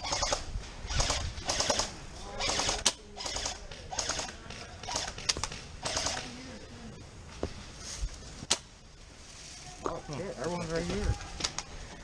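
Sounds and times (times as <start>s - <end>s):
sharp gun cracks: 0.0s - 1.9s, 2.5s - 6.3s
crunching footsteps: 7.2s - 12.0s.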